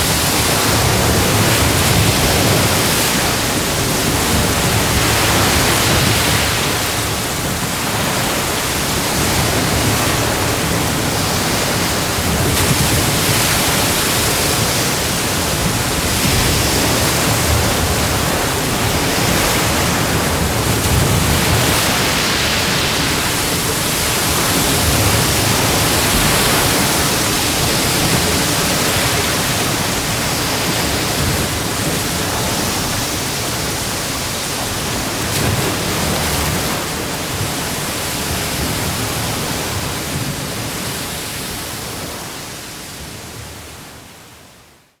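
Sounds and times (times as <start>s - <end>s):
ocean waves breaking on a beach: 0.0s - 45.0s.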